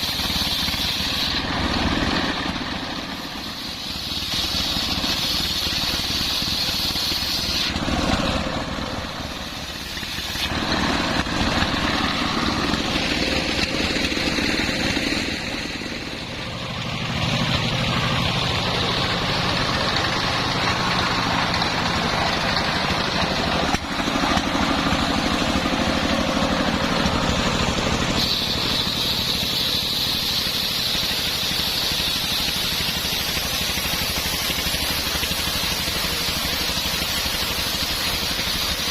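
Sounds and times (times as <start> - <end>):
engine drone: 0.0 - 38.9
high saw whine: 0.0 - 38.9.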